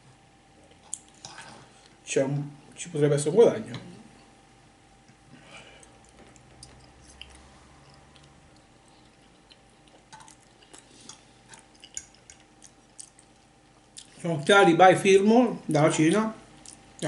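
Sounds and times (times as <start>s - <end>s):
chewing and mouth sounds: 0.6s - 2.0s, 5.8s - 14.6s, 16.5s - 17.0s.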